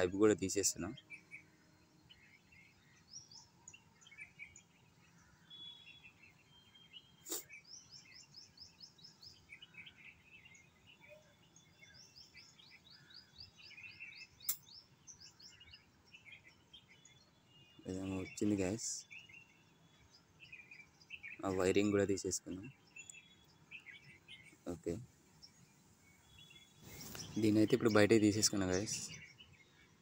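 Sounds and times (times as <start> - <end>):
small birds chirping: 0.0 - 30.0.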